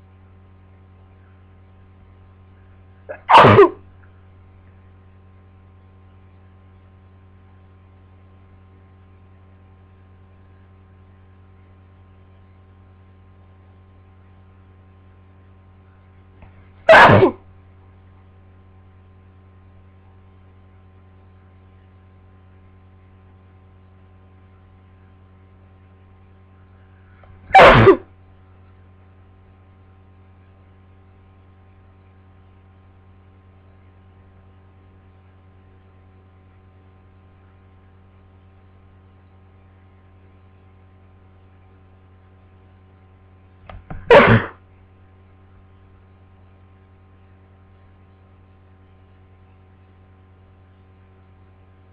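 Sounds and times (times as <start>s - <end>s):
electrical mains hum: 0.0s - 51.9s
person sneezing: 3.1s - 3.8s, 16.8s - 17.4s, 27.2s - 28.1s, 43.8s - 44.6s.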